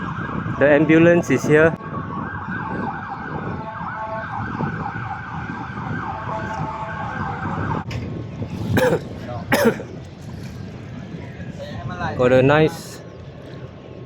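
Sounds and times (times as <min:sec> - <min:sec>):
ambulance siren: 0:00.0 - 0:07.9
street noise: 0:00.0 - 0:14.0.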